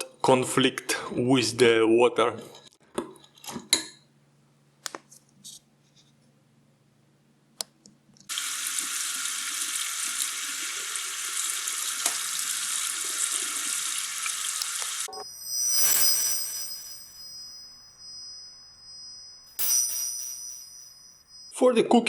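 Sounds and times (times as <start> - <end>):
kitchen tap running: 8.3 - 15.1.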